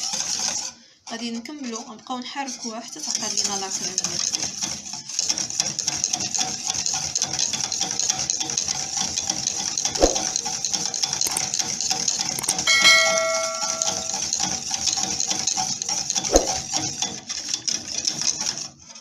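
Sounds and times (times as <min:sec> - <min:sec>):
utensil scraping metal pot: 0:00.0 - 0:19.0
ringing metal clang: 0:12.4 - 0:14.3.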